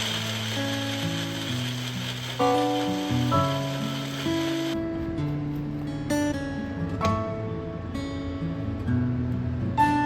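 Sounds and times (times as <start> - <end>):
food sizzling in hot oil: 0.0 - 4.8
soft background music: 0.0 - 10.0.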